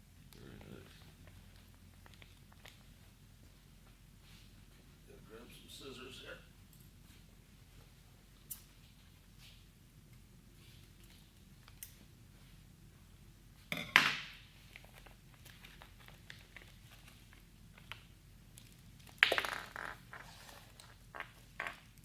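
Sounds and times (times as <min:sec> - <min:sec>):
packaging crinkling and rustling: 0:14.7 - 0:19.2.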